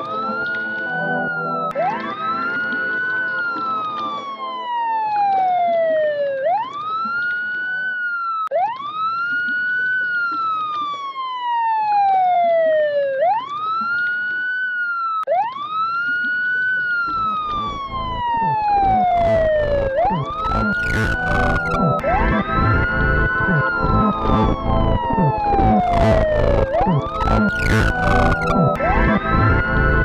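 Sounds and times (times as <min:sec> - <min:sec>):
synthesizer tone sweeping like siren: 0:00.0 - 0:09.2, 0:14.9 - 0:30.0
rough low rumble: 0:19.0 - 0:28.8.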